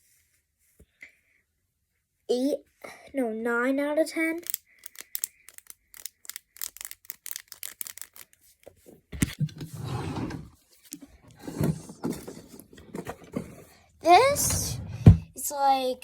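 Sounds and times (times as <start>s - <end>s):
fidget toy clicking: 4.4s - 8.4s
rustling handling noise: 10.3s - 14.8s
thump: 14.5s - 15.3s.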